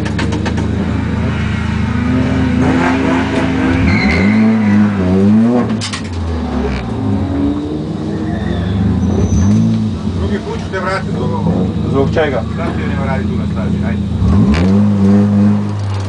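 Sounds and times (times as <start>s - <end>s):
car engine accelerating: 0.0s - 16.0s
high squeal: 1.0s - 5.6s, 7.2s - 9.9s.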